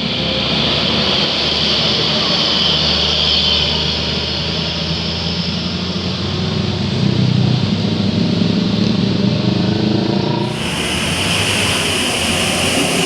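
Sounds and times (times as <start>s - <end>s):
bus engine hum: 10.3s - 13.0s
tyre hiss: 10.4s - 13.0s.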